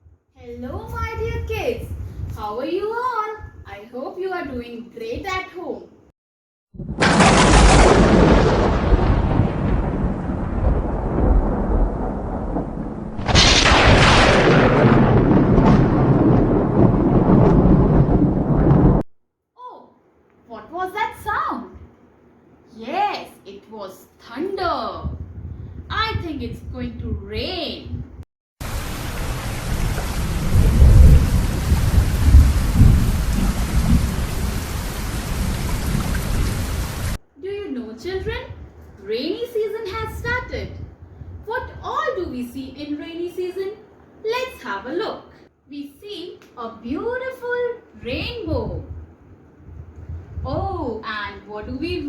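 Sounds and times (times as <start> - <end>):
heavy rain falling: 6.8 - 19.0, 28.6 - 37.2
thunder rumbling and cracking: 6.8 - 19.1, 28.6 - 37.2, 48.4 - 50.8.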